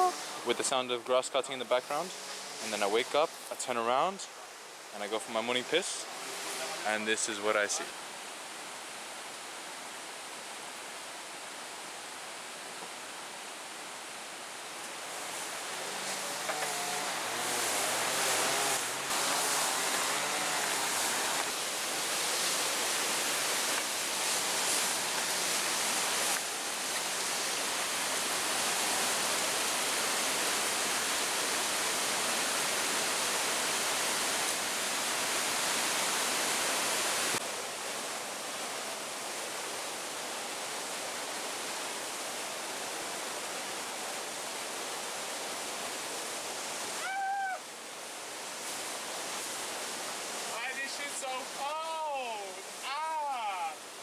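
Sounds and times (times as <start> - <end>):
brief high-pitched cry: 0.0 - 0.3, 47.0 - 47.6
mountain river rushing: 0.0 - 54.0.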